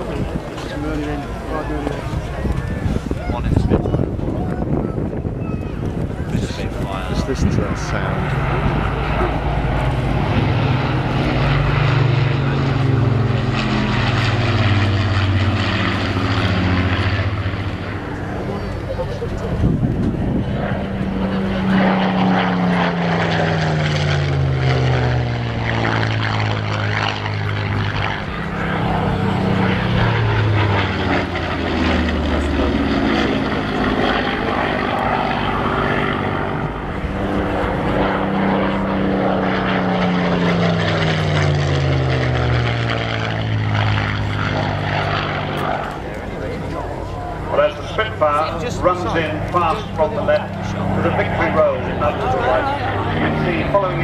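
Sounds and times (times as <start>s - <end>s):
propeller plane flying past: 0.0s - 54.0s.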